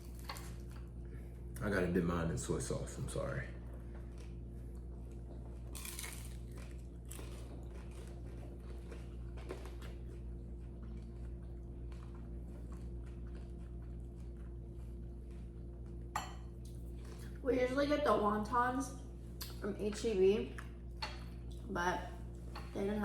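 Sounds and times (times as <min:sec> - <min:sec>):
steady low hum: 0:00.0 - 0:23.0
faint chewing: 0:03.6 - 0:16.0.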